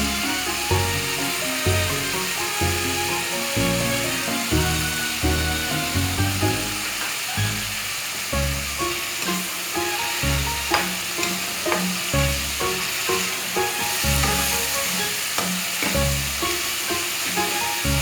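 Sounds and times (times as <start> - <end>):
background music with bass: 0.0 - 8.9, 12.2 - 12.6, 16.0 - 16.5
okra sizzling in a pan: 0.0 - 18.0.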